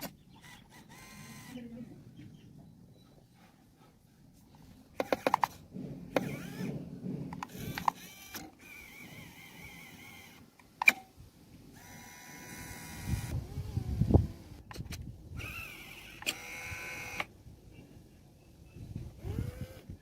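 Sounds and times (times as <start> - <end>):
mechanism clicking and knocking: 5.0 - 9.4
small electric motor whining: 6.1 - 6.8, 7.4 - 10.5, 11.8 - 14.7, 15.4 - 17.3, 19.1 - 20.0.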